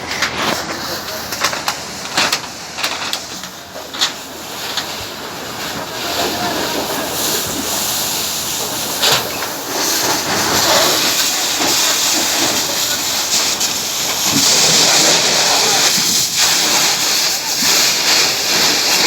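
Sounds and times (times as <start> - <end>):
rushing hiss of fire-fighting: 0.0 - 19.0.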